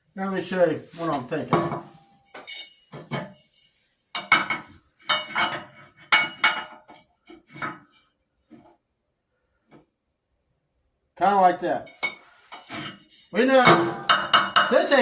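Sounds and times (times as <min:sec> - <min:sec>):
metal pipes clanking together: 0:01.4 - 0:03.4, 0:04.2 - 0:08.0, 0:11.8 - 0:15.0.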